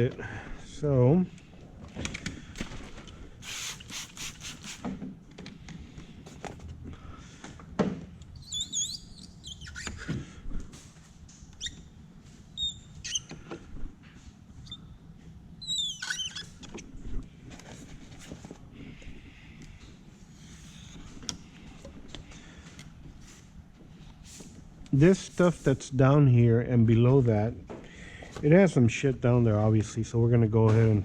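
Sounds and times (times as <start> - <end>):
high wavering squeaks: 8.4 - 10.0, 15.6 - 16.6.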